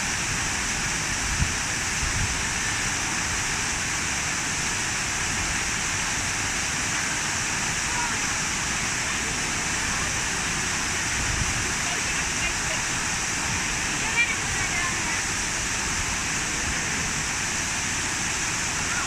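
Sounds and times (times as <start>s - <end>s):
falling water rushing: 0.0s - 19.0s.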